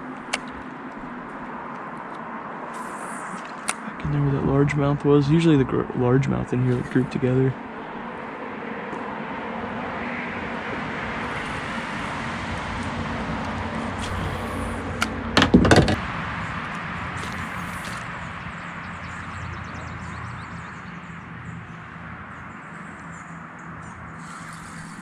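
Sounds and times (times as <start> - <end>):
loud knocks: 15.4 - 16.0.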